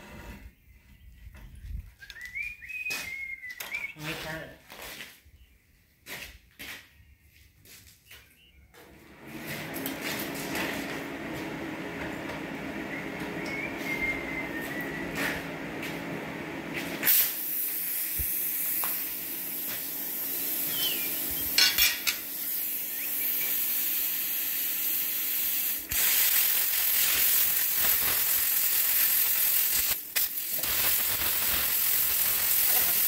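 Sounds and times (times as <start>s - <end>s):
cutting torch hissing: 17.0s - 33.0s.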